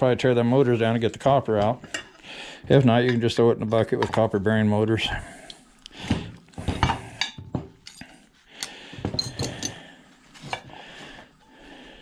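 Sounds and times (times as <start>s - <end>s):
metal parts clinking together: 7.2s - 9.8s.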